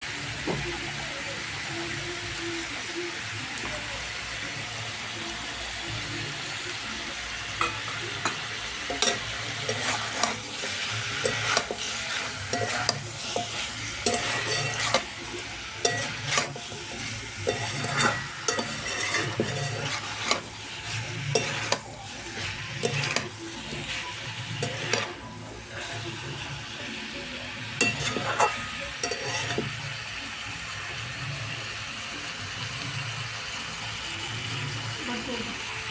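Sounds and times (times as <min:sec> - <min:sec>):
curry sizzling in a pan: 0:00.0 - 0:35.9
utensil scraping a pan: 0:08.2 - 0:26.5, 0:27.7 - 0:29.8.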